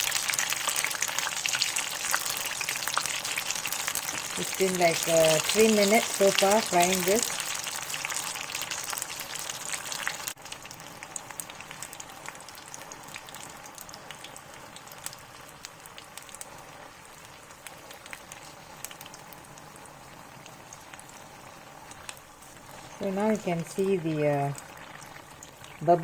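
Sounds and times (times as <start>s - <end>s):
deep-frying sizzle and crackle: 0.0s - 26.0s.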